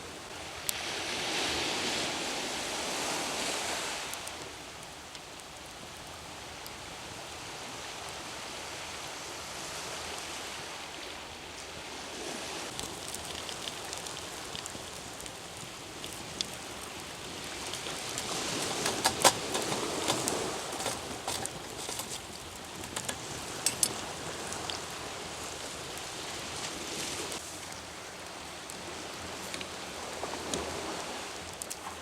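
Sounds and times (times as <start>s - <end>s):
campfire crackling and popping: 4.0s - 6.8s, 12.7s - 32.0s.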